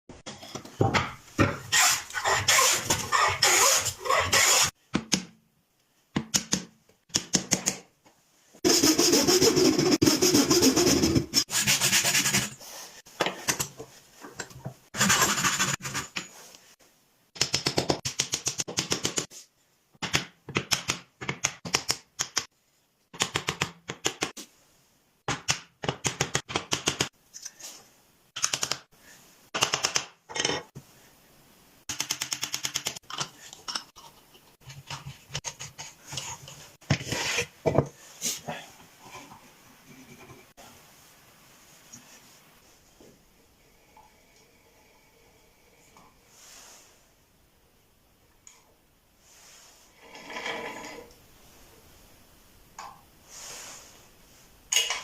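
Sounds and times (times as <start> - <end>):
rapid clicking bursts: 31.9 - 33.0.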